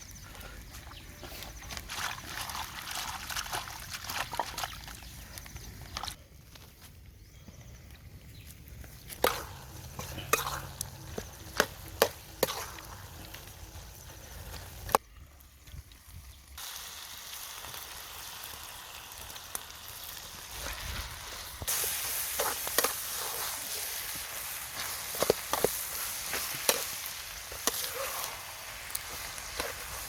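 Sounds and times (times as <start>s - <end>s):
food sizzling in a pan: 16.6s - 30.0s.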